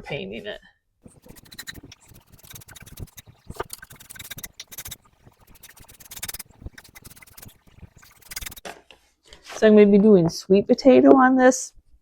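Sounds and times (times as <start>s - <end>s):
brush bristles scratching on wood: 1.1s - 8.6s.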